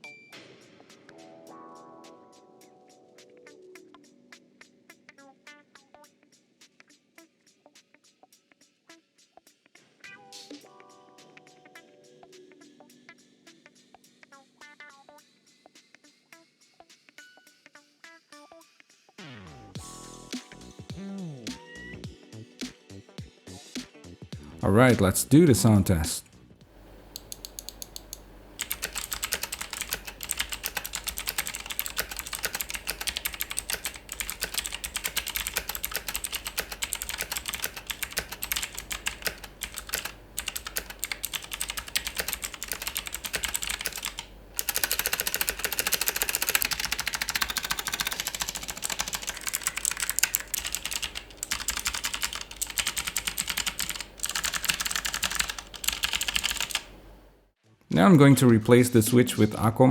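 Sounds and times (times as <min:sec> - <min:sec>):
mechanical keyboard typing: 0:27.0 - 0:57.0.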